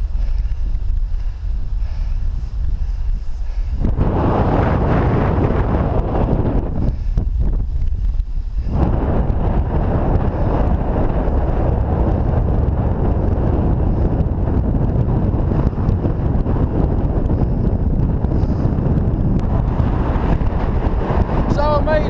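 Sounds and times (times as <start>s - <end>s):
strong wind buffeting microphone: 0.0s - 22.0s.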